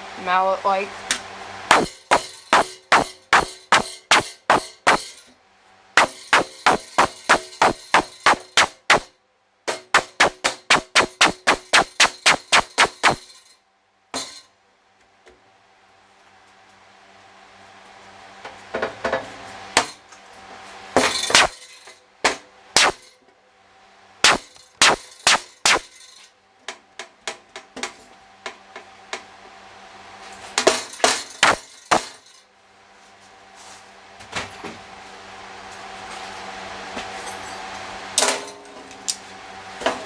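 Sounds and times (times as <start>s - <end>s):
mallet clanging on sheet metal: 1.7s - 5.3s, 6.0s - 9.1s, 9.7s - 13.5s.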